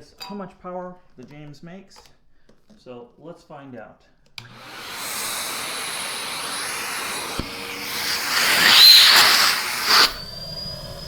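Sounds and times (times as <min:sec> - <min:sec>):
vacuum cleaner motor running: 0:04.4 - 0:11.0
rushing air with whistle: 0:04.6 - 0:11.0.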